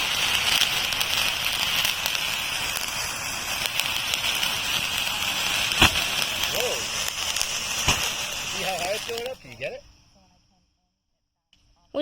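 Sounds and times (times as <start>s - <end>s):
firework crackles: 0.0s - 10.4s
fountain firework hissing: 0.0s - 10.4s
sharp pop: 5.7s - 9.4s.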